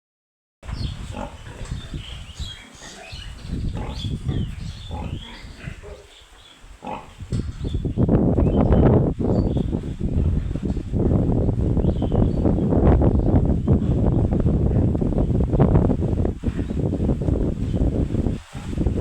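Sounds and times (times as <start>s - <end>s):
piglets grunting: 1.0s - 6.2s, 6.8s - 7.2s.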